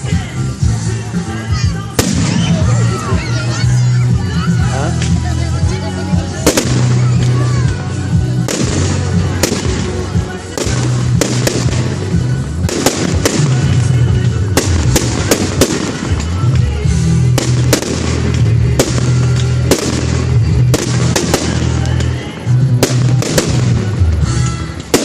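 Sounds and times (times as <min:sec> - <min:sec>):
music through loudspeakers: 0:00.0 - 0:25.0
firework shells bursting: 0:08.4 - 0:25.0.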